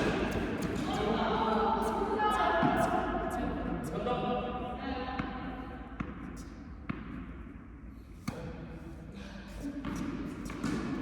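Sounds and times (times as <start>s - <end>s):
tennis ball bouncing on floor: 0.0s - 1.1s, 5.2s - 7.4s, 9.8s - 11.0s.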